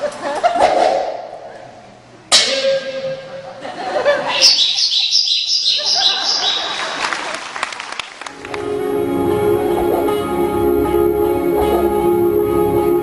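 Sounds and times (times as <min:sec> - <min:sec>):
cartoon bird tweets: 0:04.3 - 0:06.8
audience applause: 0:06.6 - 0:08.7
plucked guitar music: 0:08.3 - 0:13.0.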